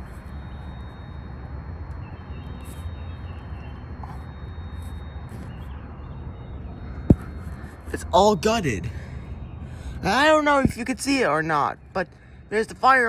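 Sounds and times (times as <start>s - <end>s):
faint high whine: 0.0s - 13.0s
faint bird chirps: 1.8s - 7.9s
distant traffic rumble: 5.5s - 13.0s.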